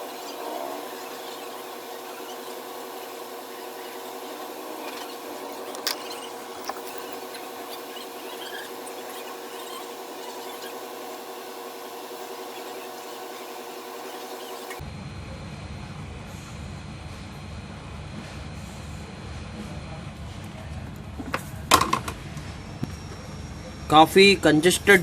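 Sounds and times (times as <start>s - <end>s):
electric blower motor humming: 0.0s - 14.8s.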